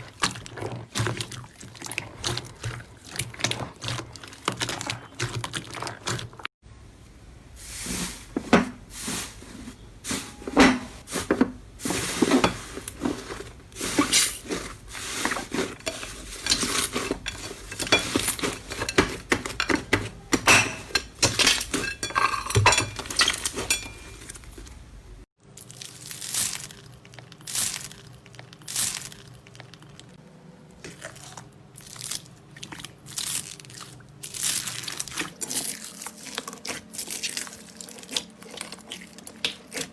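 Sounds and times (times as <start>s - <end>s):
slime squishing: 0.0s - 6.5s, 30.8s - 39.9s.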